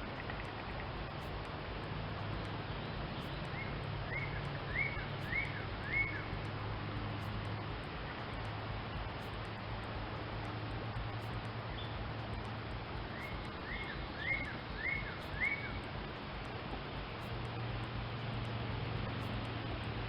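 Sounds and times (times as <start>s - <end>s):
bird chirping: 0.0s - 1.4s, 2.3s - 6.4s, 11.2s - 12.0s, 13.0s - 16.0s
hiss-like background: 0.0s - 20.0s
low hum: 0.0s - 20.0s.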